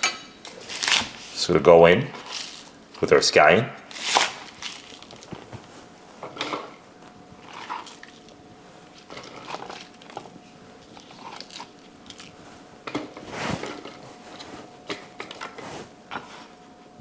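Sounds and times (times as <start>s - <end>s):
crunchy clicks and rustles: 3.9s - 16.5s.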